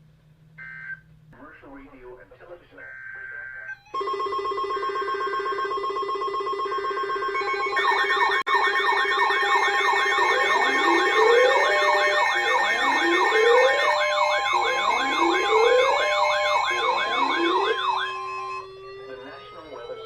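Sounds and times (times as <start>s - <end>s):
electronic siren warble: 2.8s - 20.0s
steady alert tones: 2.8s - 20.0s
rising siren sweep: 7.3s - 20.0s.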